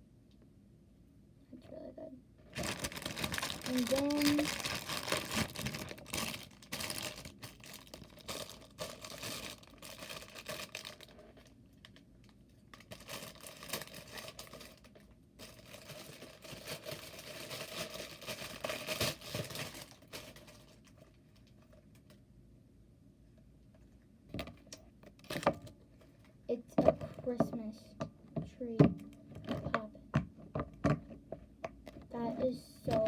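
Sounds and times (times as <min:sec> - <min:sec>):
plastic packaging crinkling: 0:02.5 - 0:22.2.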